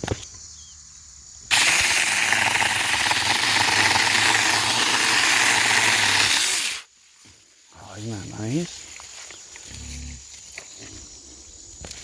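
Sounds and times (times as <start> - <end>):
electric chainsaw cutting wood: 1.5 - 6.8.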